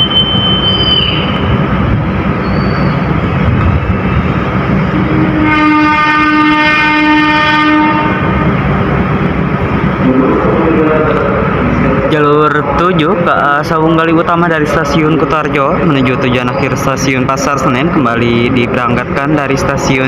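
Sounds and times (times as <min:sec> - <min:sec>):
high wheel squeal: 0:00.0 - 0:01.6, 0:02.3 - 0:03.2
train rumbling on tracks: 0:00.0 - 0:20.0
locomotive horn blast: 0:04.9 - 0:08.6.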